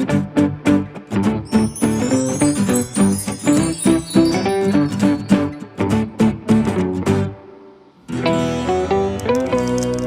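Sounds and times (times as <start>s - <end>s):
plucked guitar-like tune: 0.0s - 10.0s
high jingling shimmer: 1.5s - 5.7s.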